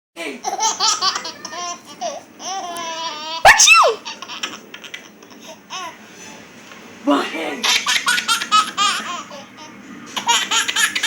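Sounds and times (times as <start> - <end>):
baby laughing in squeals: 0.6 - 5.9
loud sneeze: 3.5 - 4.0.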